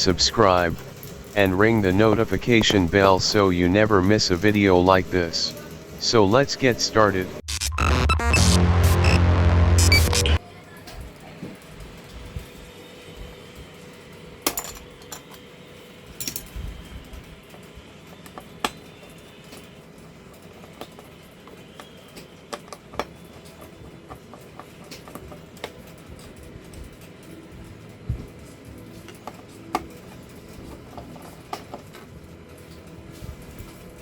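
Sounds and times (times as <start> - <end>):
tools clicking and clinking: 16.2 - 16.5.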